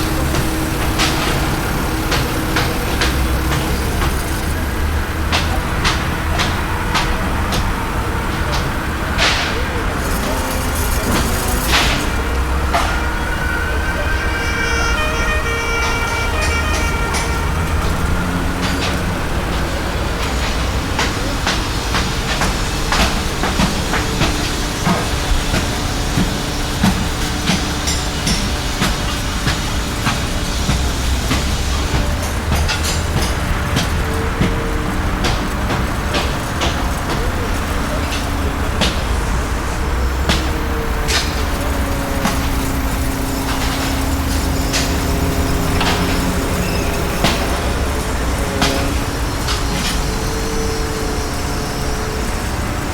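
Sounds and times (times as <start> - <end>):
machinery engine rumble: 0.0 - 52.9.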